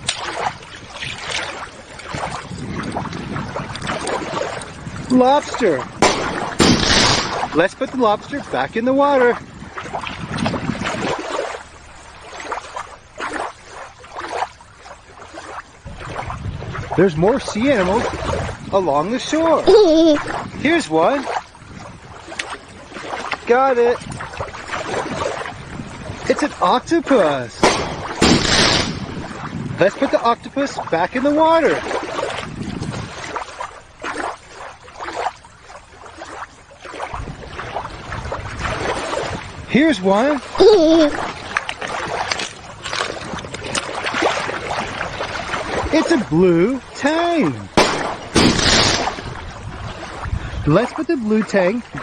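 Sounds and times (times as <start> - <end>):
shallow water splashing: 0.0 - 52.0.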